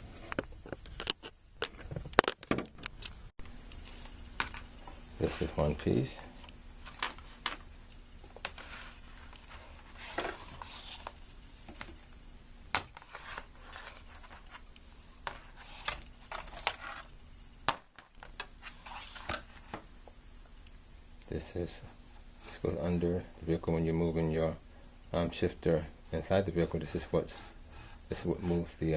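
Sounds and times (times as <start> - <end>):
cable handling clicks and rustling: 0.2 - 5.4, 6.4 - 12.1.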